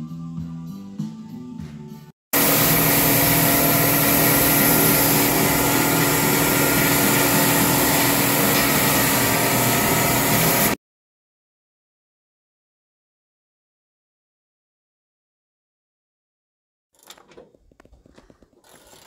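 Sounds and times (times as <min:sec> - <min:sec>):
machine whirring: 0:02.4 - 0:10.8.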